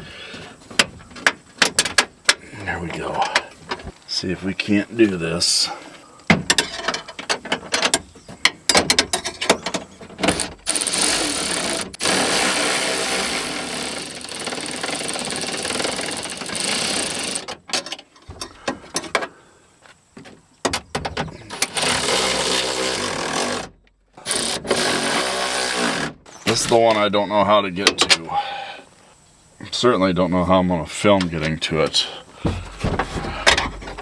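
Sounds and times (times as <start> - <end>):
sharp clicks and knocks: 0.7 - 4.1, 6.2 - 12.2, 20.2 - 25.3, 31.2 - 34.0
power driver running: 10.6 - 17.4.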